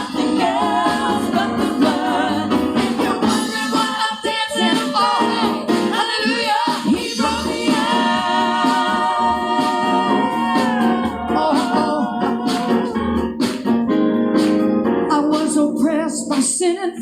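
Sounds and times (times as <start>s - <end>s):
gospel singing: 0.0s - 13.6s
musical accompaniment: 0.0s - 16.8s
singer holding long note: 8.4s - 13.1s.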